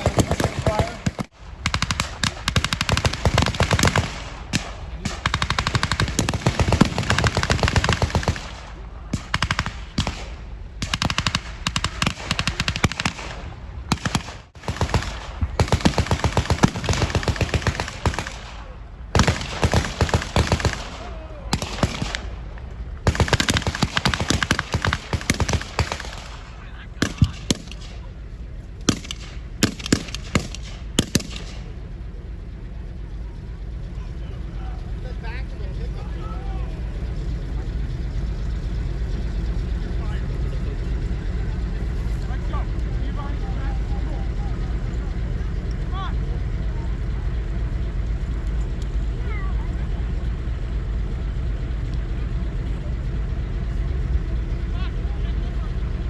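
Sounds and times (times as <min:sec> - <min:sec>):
rifle shots: 0:00.0 - 0:32.0
machine-gun fire: 0:00.0 - 0:32.1.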